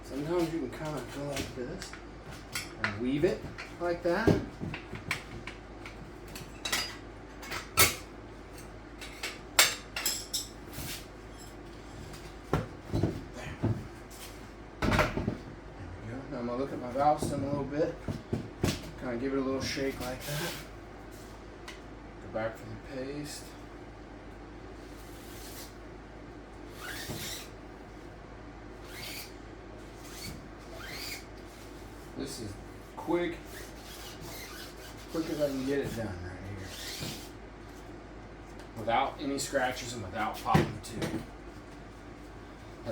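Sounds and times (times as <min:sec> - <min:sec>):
squeaky scrapes of rubber and metal: 0:26.7 - 0:27.6, 0:28.8 - 0:29.3, 0:30.0 - 0:31.3, 0:33.4 - 0:37.4.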